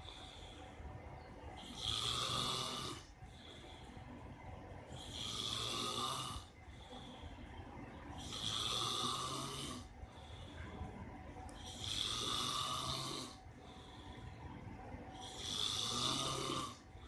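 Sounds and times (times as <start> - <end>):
quiet breathing: 0.0 - 17.0
man snoring: 1.6 - 3.1, 5.0 - 6.6, 8.2 - 9.9, 11.6 - 13.9, 15.2 - 17.0.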